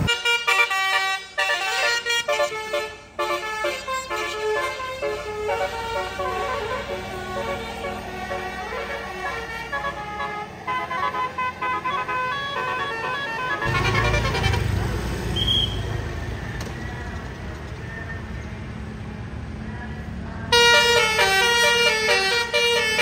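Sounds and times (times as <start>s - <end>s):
musical air horn tune: 0.0s - 14.8s, 20.5s - 23.0s
bus engine rumble: 0.0s - 23.0s
traffic noise: 0.0s - 23.0s.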